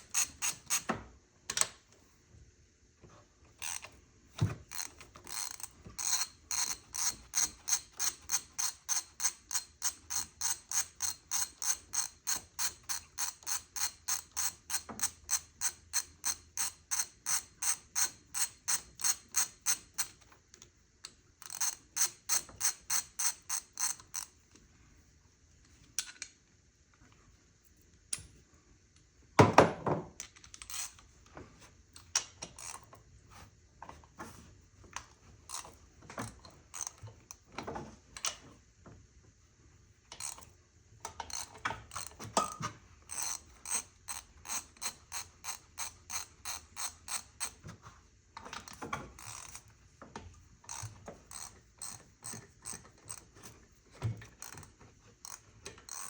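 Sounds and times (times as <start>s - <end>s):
ratchet wrench clicking: 0.0s - 0.9s, 3.6s - 3.9s, 4.7s - 20.2s, 21.4s - 24.3s, 30.5s - 31.0s, 35.5s - 37.0s, 40.2s - 40.5s, 41.1s - 47.6s, 48.6s - 49.6s, 50.7s - 53.5s, 54.2s - 56.0s.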